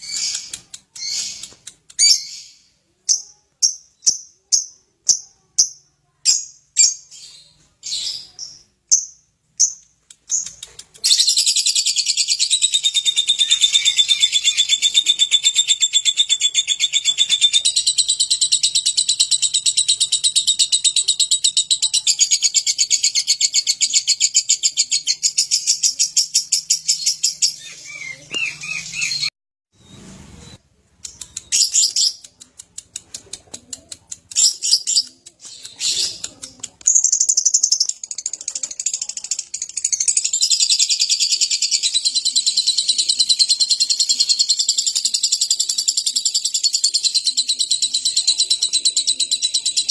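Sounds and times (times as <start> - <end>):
lovebird shrill chirps: 0.0 - 4.7
lovebird chattering: 0.0 - 5.7, 7.9 - 29.3, 31.0 - 49.9.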